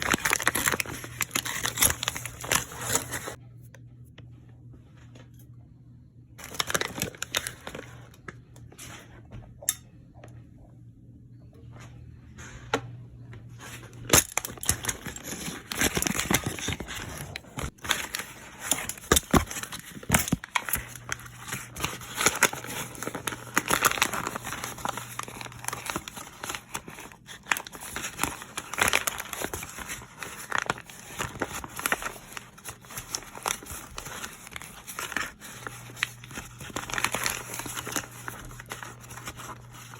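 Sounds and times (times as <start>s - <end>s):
paper bag crinkling and tearing: 0.0s - 3.4s, 6.4s - 8.0s, 13.6s - 39.9s
popcorn crackling: 0.0s - 3.4s, 14.1s - 39.9s
faint steady hum: 0.0s - 39.9s.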